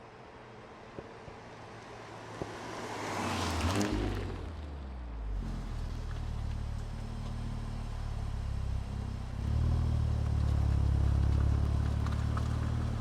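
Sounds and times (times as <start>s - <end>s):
car engine and exhaust running: 5.7s - 13.0s.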